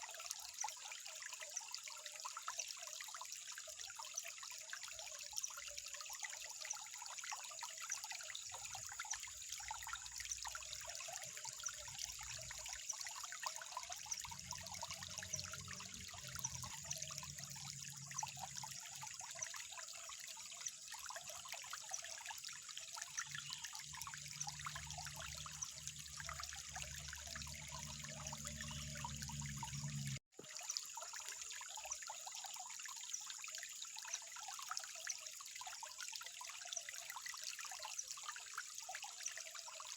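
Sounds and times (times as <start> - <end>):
water trickling: 0.0 - 39.9
low hum: 27.1 - 30.2.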